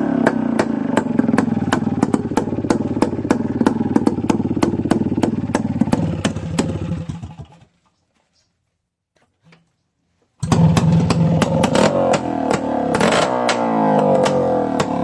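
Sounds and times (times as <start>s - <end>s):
engine running steadily: 0.0s - 7.6s.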